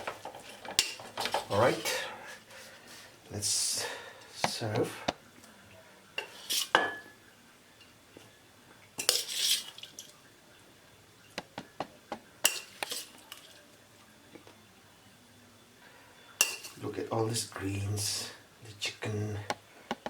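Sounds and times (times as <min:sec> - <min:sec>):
spoon clinking against a pot: 0:00.2 - 0:01.5, 0:06.2 - 0:07.2, 0:12.4 - 0:13.6, 0:16.4 - 0:16.8.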